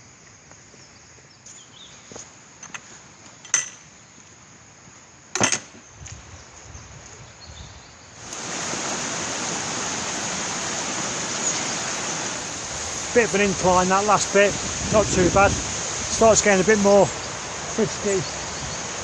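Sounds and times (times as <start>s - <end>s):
stream water rushing: 8.1s - 19.0s.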